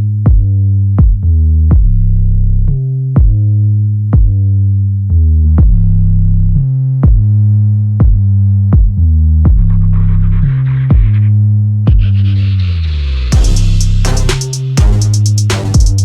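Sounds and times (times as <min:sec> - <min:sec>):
electronic music with drum machine: 0:09.5 - 0:12.5, 0:13.3 - 0:16.0.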